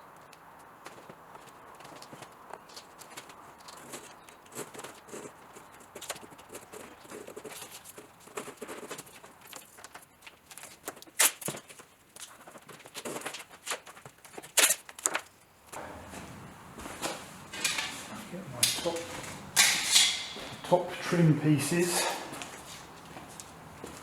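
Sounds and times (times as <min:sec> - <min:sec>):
tools and parts tapping: 0:17.0 - 0:20.7.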